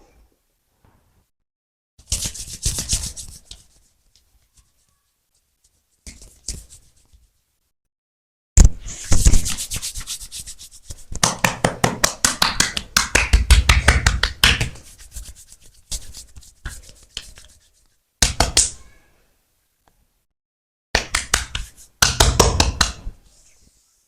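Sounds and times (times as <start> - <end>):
hand slaps and taps on body: 6.1 - 6.7, 11.1 - 14.8, 18.2 - 18.8, 21.0 - 23.1.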